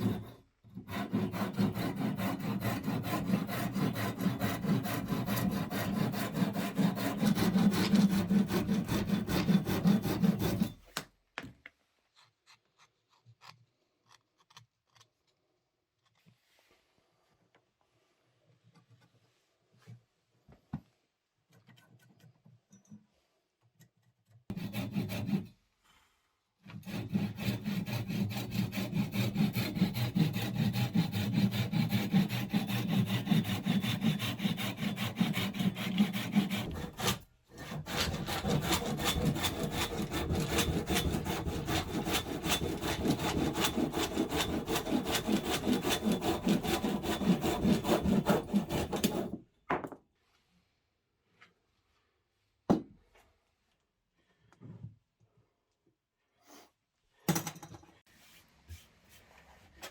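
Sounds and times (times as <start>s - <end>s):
hand saw cutting wood: 0.0s - 11.0s, 24.5s - 25.6s, 26.6s - 49.4s.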